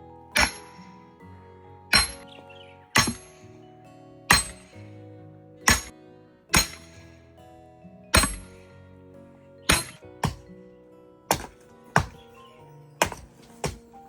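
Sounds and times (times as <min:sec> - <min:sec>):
background music: 0:00.0 - 0:14.0
axe chopping wood: 0:00.4 - 0:00.8, 0:01.9 - 0:02.3, 0:03.0 - 0:03.4, 0:04.3 - 0:04.8, 0:05.6 - 0:07.0, 0:08.1 - 0:08.6, 0:09.7 - 0:10.5, 0:11.3 - 0:12.4, 0:13.0 - 0:14.0.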